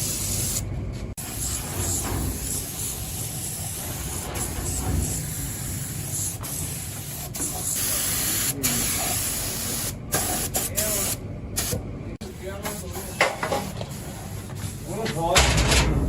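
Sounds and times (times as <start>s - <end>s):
low workshop rumble: 0.0s - 16.0s
air spraying hiss: 1.2s - 11.8s.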